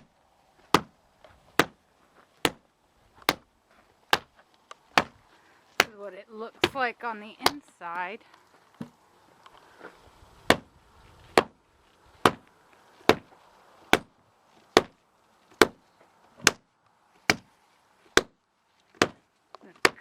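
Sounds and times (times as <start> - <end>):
hand tamper striking earthbag: 0.7 - 0.9, 1.6 - 1.8, 2.4 - 3.5, 4.1 - 5.2, 5.8 - 6.0, 10.5 - 10.7, 11.3 - 11.6, 12.2 - 13.3, 13.9 - 14.1, 14.7 - 15.0, 15.6 - 15.8, 16.4 - 16.7, 17.3 - 17.5, 18.1 - 18.4, 19.0 - 20.0.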